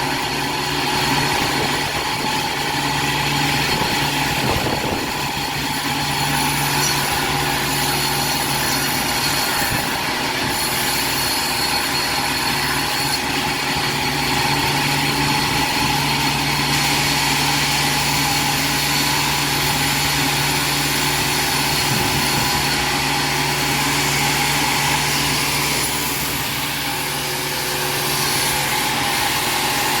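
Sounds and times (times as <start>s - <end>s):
sawmill machinery drone: 0.0s - 30.0s
higher whining tones: 19.5s - 30.0s.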